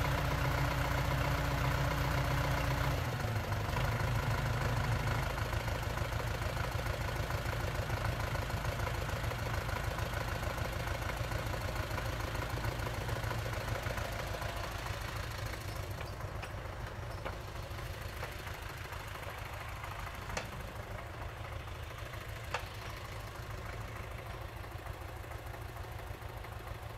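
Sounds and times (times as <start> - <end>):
excavator engine running: 0.0 - 26.9.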